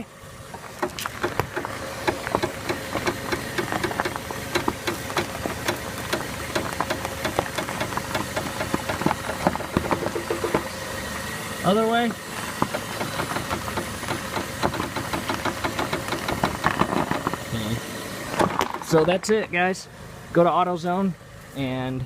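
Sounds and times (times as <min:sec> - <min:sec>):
car engine idling: 0:00.0 - 0:21.8
suspension link clicking: 0:00.5 - 0:10.7, 0:12.4 - 0:17.4.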